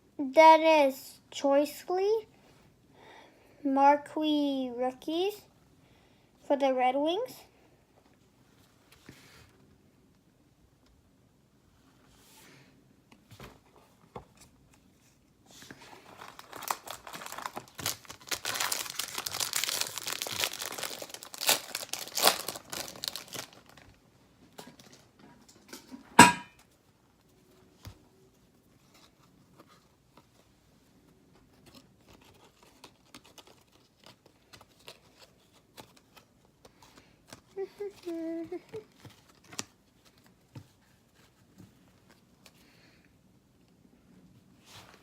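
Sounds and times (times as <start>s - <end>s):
wrapper tearing and crinkling: 16.0s - 24.0s
cards clicking and rustling: 31.6s - 40.8s.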